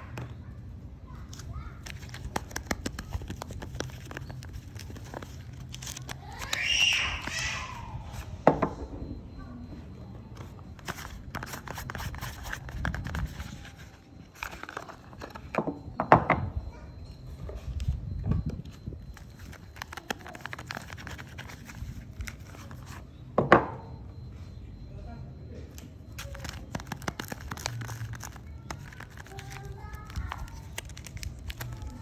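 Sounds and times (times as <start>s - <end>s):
wrappers crinkling: 1.3s - 7.5s, 18.7s - 23.0s, 26.1s - 32.0s.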